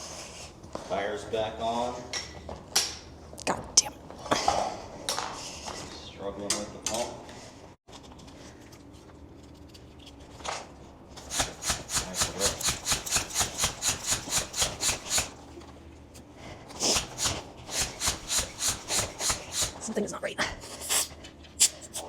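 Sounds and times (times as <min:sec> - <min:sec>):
bicycle pump hissing: 0:11.2 - 0:15.4, 0:16.8 - 0:19.9.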